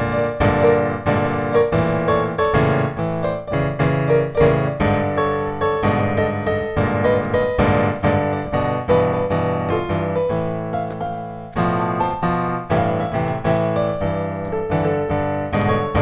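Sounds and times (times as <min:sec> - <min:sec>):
slow piano music: 0:00.0 - 0:16.0.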